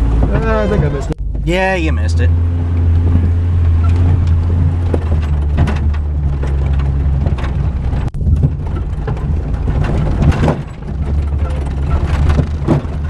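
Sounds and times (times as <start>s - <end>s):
body clunks and rattles: 0.0s - 13.0s
vehicle engine running: 0.0s - 13.0s.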